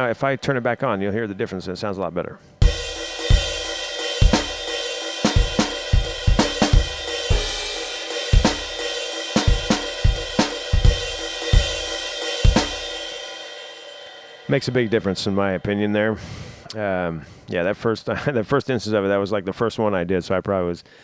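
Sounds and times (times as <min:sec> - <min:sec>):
cymbals and hi-hat wash: 0:02.6 - 0:15.9.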